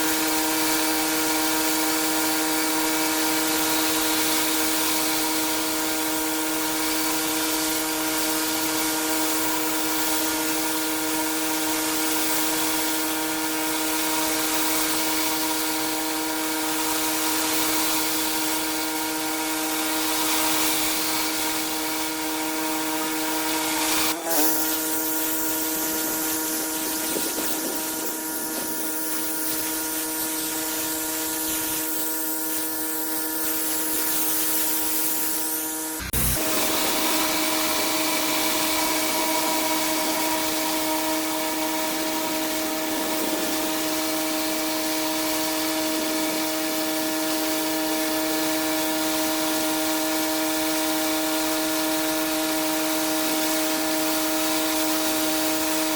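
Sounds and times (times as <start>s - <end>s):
pressure washer hum: 0.0s - 48.5s
water spray hissing: 23.8s - 32.8s.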